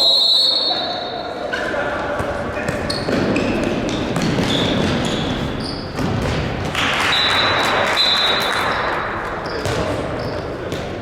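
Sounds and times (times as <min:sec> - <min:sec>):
general play noise: 0:00.0 - 0:11.0
ball bouncing on court: 0:02.2 - 0:07.7, 0:08.4 - 0:11.0.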